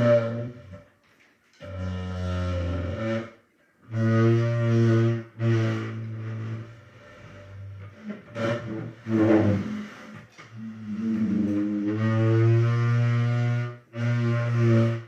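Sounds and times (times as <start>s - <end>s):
chair creaking: 6.0s - 13.2s.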